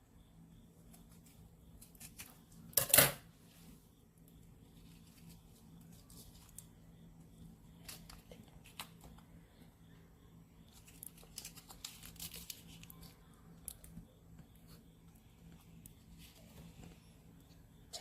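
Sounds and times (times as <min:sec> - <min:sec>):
packet rustling: 0:10.7 - 0:13.1.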